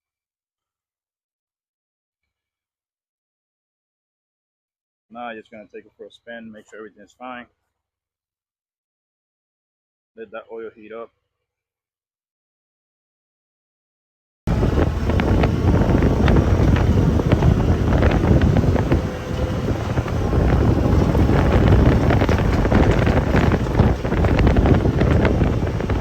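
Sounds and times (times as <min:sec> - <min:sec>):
knocks and rattles: 0:14.5 - 0:26.0
vehicle engine running: 0:14.5 - 0:26.0
wind buffeting microphone: 0:14.5 - 0:26.0.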